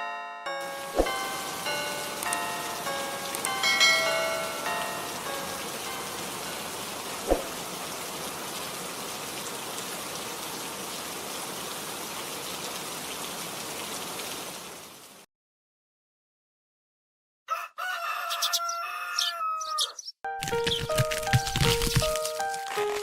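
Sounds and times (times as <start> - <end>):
ringing chime notes: 0.0 - 6.6
steady rain: 0.6 - 15.3.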